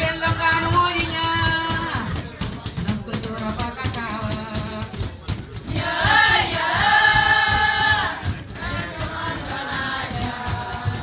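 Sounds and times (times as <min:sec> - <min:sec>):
chorus of voices singing: 0:05.7 - 0:11.0.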